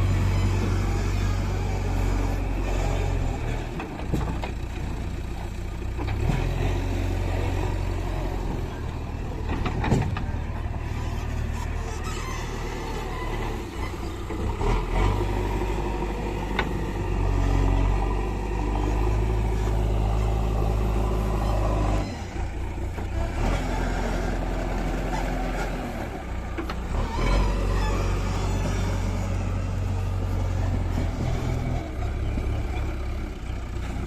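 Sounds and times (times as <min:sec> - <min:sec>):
diesel engine running: 0:00.0 - 0:34.0.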